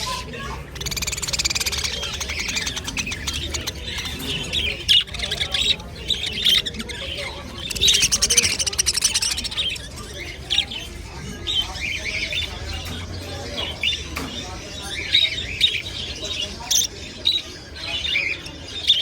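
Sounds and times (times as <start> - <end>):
caged birds chirping and squawking: 0.0 - 19.0.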